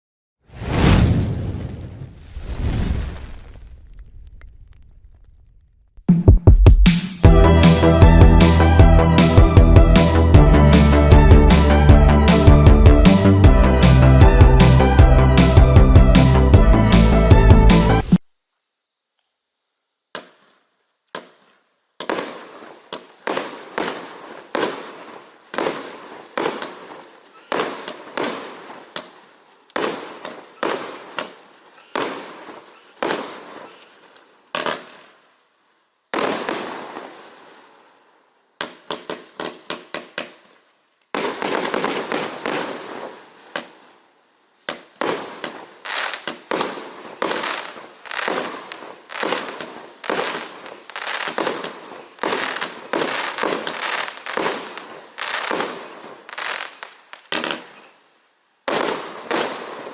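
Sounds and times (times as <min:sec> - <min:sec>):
fireworks firing in volleys: 0:00.5 - 0:05.9, 0:20.1 - 0:35.3, 0:36.1 - 0:38.0, 0:38.6 - 0:58.0, 0:58.6 - 0:59.9
fireworks crackle: 0:00.5 - 0:06.0, 0:20.2 - 0:35.4, 0:36.1 - 0:37.8, 0:38.6 - 0:44.0, 0:44.6 - 0:58.0, 0:58.7 - 0:59.9.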